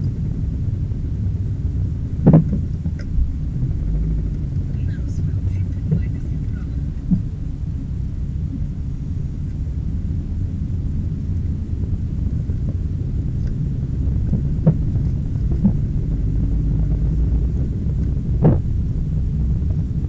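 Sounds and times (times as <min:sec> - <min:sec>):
car engine running: 0:00.0 - 0:20.0.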